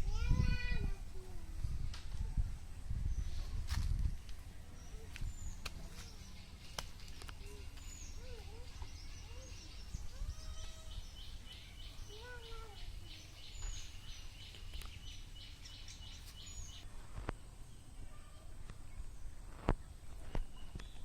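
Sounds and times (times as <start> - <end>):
birds calling: 4.6 - 16.9.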